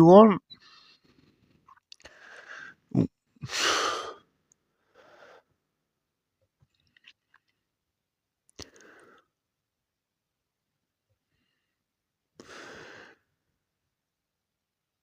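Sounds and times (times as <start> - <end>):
person breathing: 0.6 - 2.8, 4.8 - 5.5, 12.4 - 13.3.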